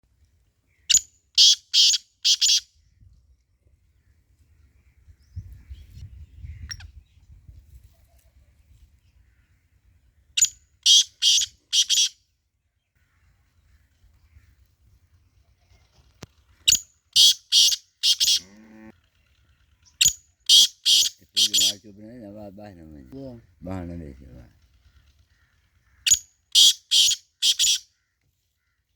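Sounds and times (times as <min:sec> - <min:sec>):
francolin harsh rasping call: 0:01.4 - 0:02.7, 0:10.8 - 0:12.2, 0:16.7 - 0:18.9, 0:20.0 - 0:22.0, 0:24.8 - 0:28.2.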